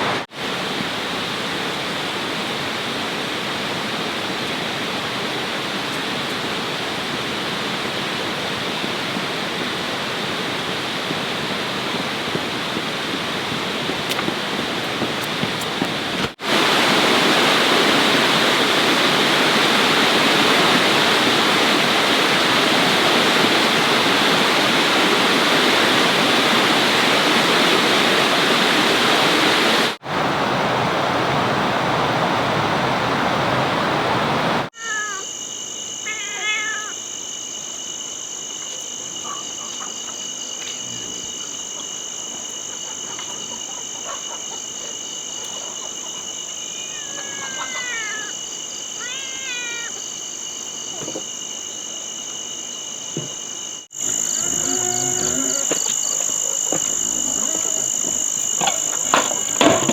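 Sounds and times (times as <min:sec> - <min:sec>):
rushing water: 0:00.0 - 0:35.2, 0:46.6 - 0:50.0
insects buzzing: 0:00.4 - 0:29.8, 0:34.7 - 0:59.9
short animal calls: 0:34.8 - 0:35.3, 0:36.0 - 0:37.0, 0:46.7 - 0:48.4, 0:49.0 - 0:50.0.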